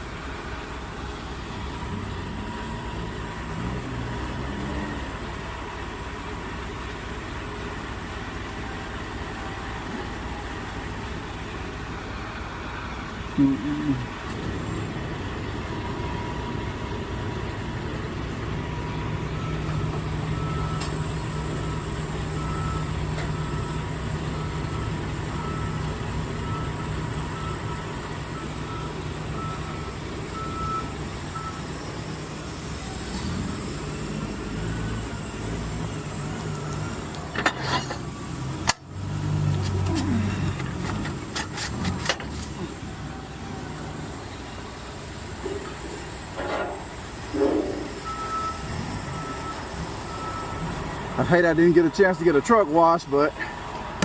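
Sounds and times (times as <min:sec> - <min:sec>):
heavy vehicle engine rumbling: 0:00.0 - 0:54.0
reversing alarm beeping: 0:18.7 - 0:37.2, 0:47.3 - 0:50.9.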